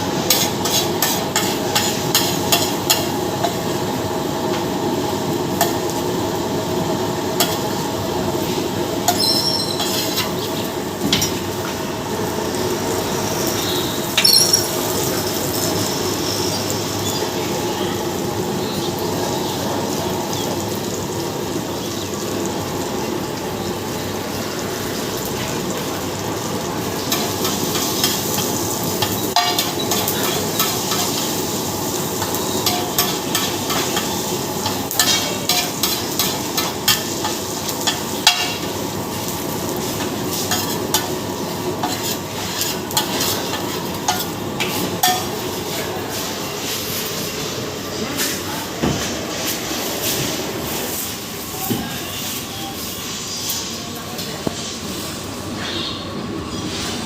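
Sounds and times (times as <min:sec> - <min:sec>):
egg sizzling in a pan: 0:00.0 - 0:47.8
metal spatula scraping a pan: 0:00.3 - 0:02.7, 0:09.1 - 0:10.3, 0:41.8 - 0:45.8.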